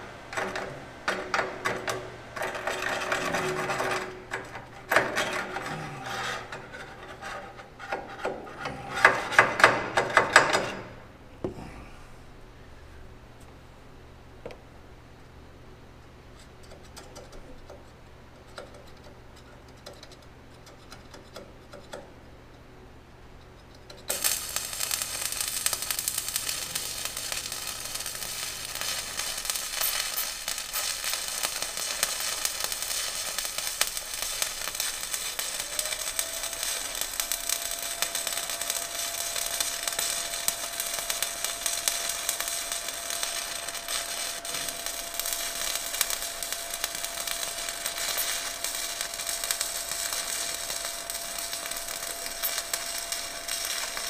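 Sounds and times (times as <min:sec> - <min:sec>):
welding arc crackling: 0:00.0 - 0:11.0, 0:23.8 - 0:54.0
faint steady whine: 0:10.7 - 0:54.0
low hum: 0:33.9 - 0:54.0.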